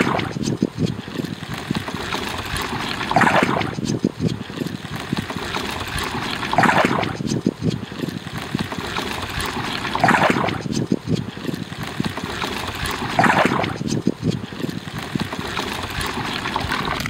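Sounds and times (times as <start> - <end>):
water splashing around boat: 0.0 - 17.0.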